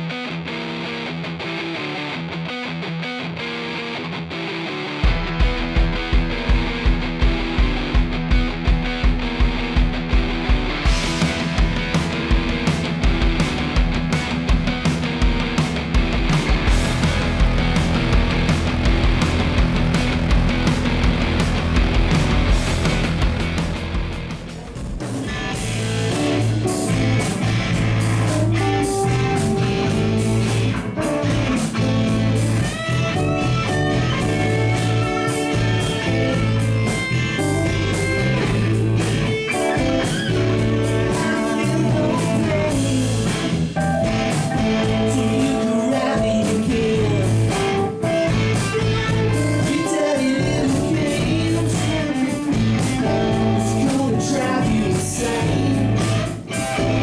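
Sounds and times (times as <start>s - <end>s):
electric guitars: 0.0s - 57.0s
live rock band: 0.0s - 57.0s.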